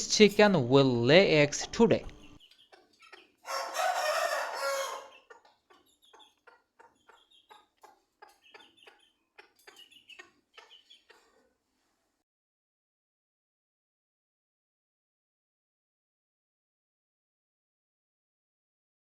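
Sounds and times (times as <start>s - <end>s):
chickens clucking: 1.6s - 12.1s
chicken drawn-out call: 2.4s - 11.6s.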